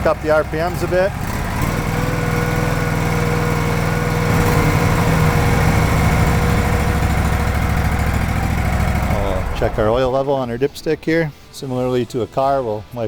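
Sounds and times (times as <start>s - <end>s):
engine running at raised revs: 0.0s - 10.1s.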